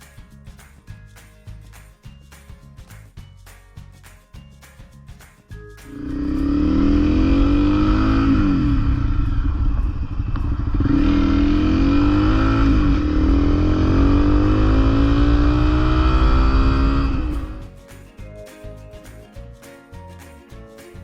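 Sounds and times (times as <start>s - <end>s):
motorcycle engine accelerating: 5.9s - 17.6s.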